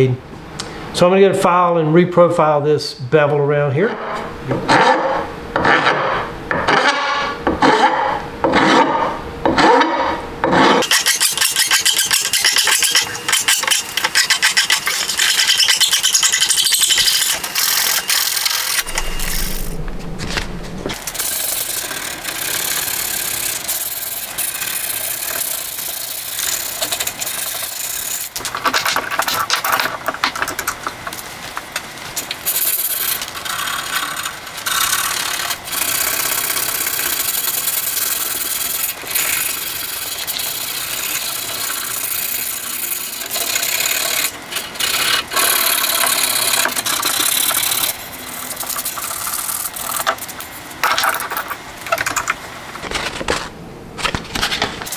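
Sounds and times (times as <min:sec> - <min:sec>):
hand file rasping on steel: 0:10.5 - 0:18.1.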